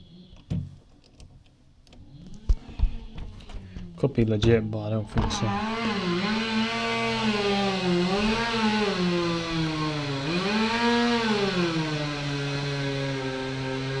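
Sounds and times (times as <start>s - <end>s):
engine revving: 4.3s - 14.0s.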